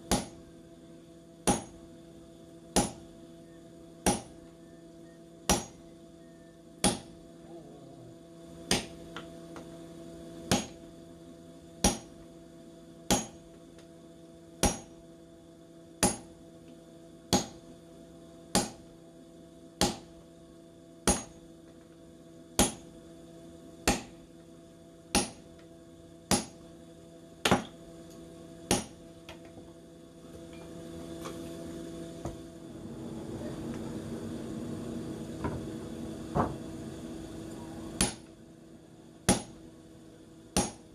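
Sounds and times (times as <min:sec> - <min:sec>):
steady hum: 0:00.0 - 0:40.9
hammer striking steel on anvil: 0:01.4 - 0:01.8, 0:02.8 - 0:03.0, 0:05.5 - 0:05.8, 0:06.8 - 0:07.2, 0:13.1 - 0:13.4, 0:14.6 - 0:14.9, 0:16.0 - 0:16.3, 0:21.0 - 0:21.4, 0:38.0 - 0:38.3, 0:39.3 - 0:39.6, 0:40.6 - 0:40.9.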